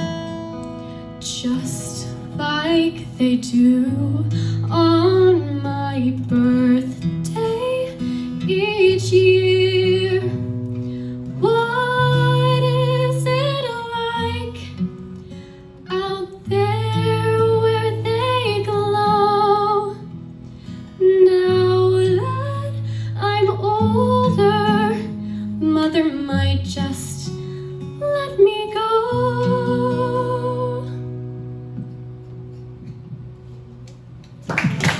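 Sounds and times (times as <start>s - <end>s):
woman singing: 1.2s - 10.6s, 11.3s - 14.9s, 15.8s - 20.2s, 21.0s - 31.1s.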